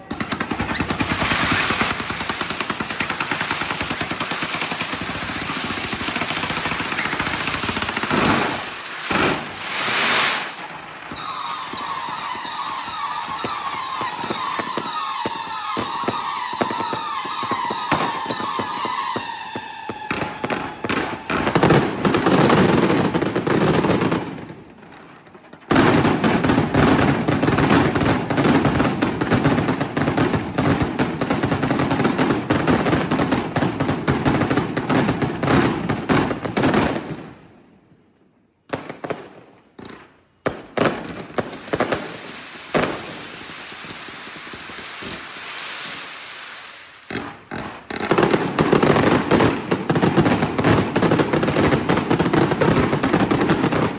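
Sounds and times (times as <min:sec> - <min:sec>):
firecracker bangs: 0:00.0 - 0:24.4, 0:39.8 - 0:53.9
firework crackle: 0:00.0 - 0:36.6, 0:39.9 - 0:53.9.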